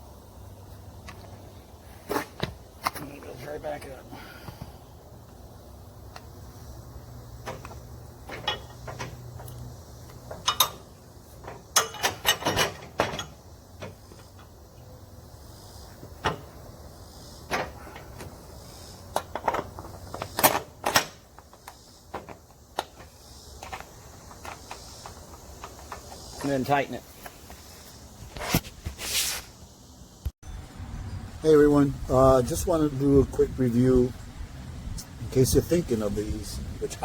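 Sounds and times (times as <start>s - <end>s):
metallic clanks and clicks: 7.4s - 14.5s.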